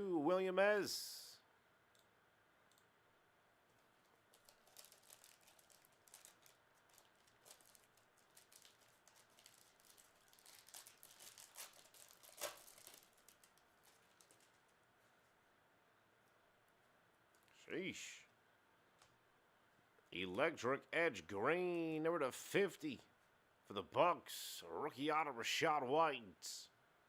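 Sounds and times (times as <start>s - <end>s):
light clicks and crinkles: 3.6s - 15.4s, 16.2s - 17.6s.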